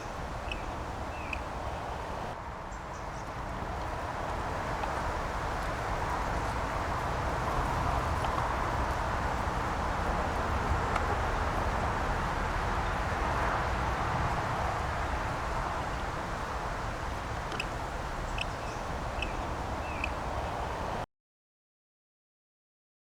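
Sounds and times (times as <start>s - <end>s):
bird chirping: 0.0s - 3.3s, 17.6s - 20.7s.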